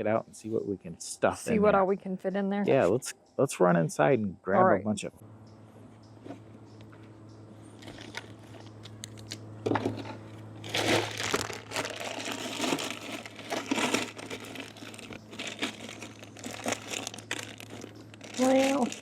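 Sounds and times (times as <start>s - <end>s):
low steady hum: 0.0s - 19.0s
food packaging crinkling: 10.6s - 19.0s.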